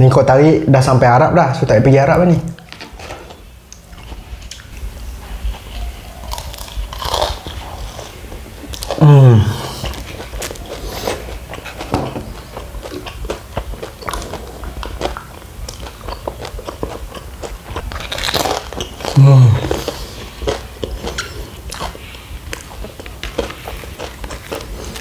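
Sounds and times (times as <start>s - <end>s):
person chewing: 3.7s - 25.0s
person humming: 8.9s - 10.1s, 19.2s - 20.0s.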